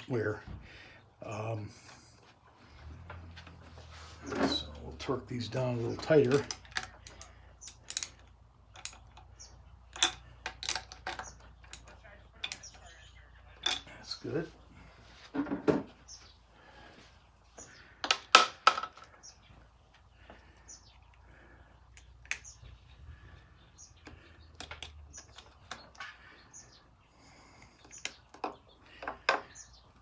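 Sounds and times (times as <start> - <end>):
metal tools clinking: 4.2 - 9.3, 9.9 - 12.8, 13.6 - 14.4.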